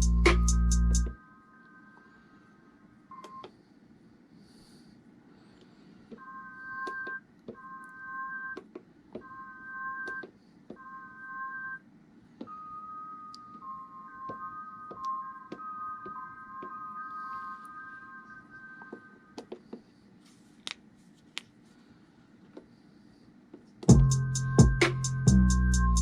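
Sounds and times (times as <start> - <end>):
beep-like synthesizer chords: 23.9 - 26.0.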